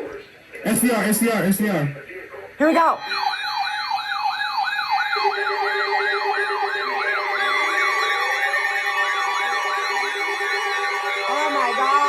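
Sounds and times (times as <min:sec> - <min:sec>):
electronic siren alert tone: 0:03.0 - 0:12.0.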